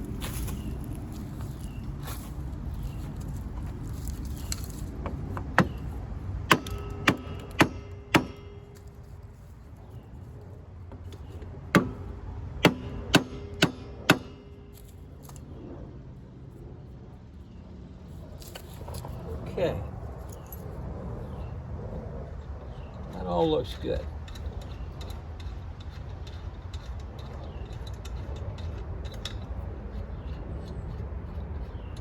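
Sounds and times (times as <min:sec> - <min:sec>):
low background hum: 0:00.0 - 0:32.0
hammer striking metal: 0:06.5 - 0:08.9, 0:11.7 - 0:14.8.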